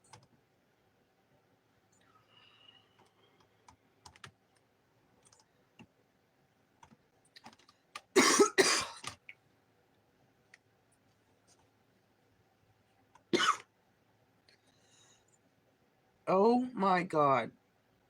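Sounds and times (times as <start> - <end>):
faint scattered clicks: 2.9 - 5.9
person coughing: 8.2 - 9.2, 13.4 - 13.7.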